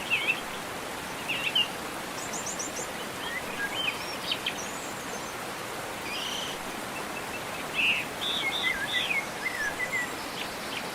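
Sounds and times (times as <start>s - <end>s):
birds chirping and trilling: 6.0s - 10.9s.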